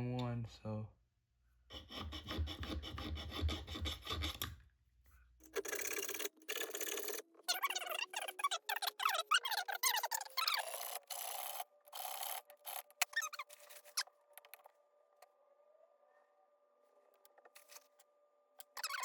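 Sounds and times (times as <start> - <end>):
hand file rasping on steel: 1.7 - 4.6.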